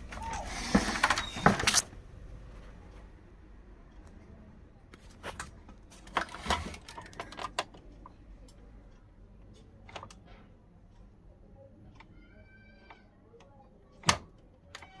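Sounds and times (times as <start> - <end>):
sharp clicks and rattles: 5.4 - 8.6.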